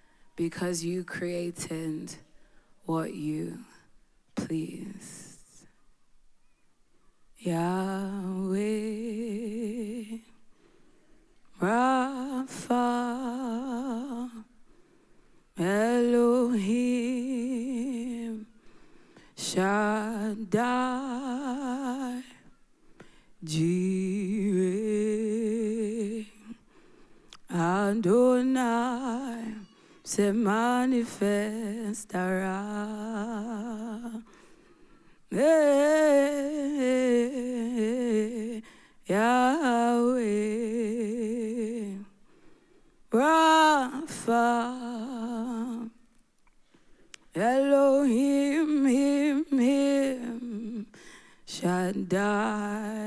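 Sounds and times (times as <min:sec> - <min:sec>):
person singing unaccompanied: 0:04.4 - 0:05.7, 0:07.4 - 0:10.4, 0:11.5 - 0:14.6, 0:15.6 - 0:18.6, 0:19.4 - 0:22.6, 0:23.4 - 0:26.6, 0:27.3 - 0:34.4, 0:35.3 - 0:42.2, 0:43.1 - 0:46.0, 0:47.2 - 0:53.0.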